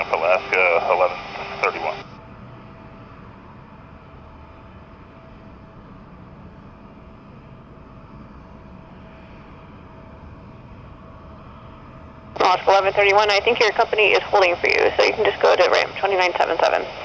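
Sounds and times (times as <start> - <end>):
distant airliner engines rumbling: 0.0 - 17.0
faint steady whine: 0.0 - 17.0.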